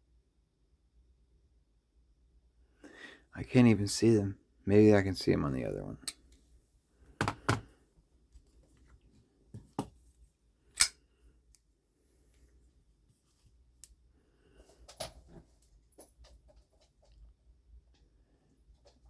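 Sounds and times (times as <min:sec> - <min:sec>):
folding knife metallic clicks: 0:10.8 - 0:11.0.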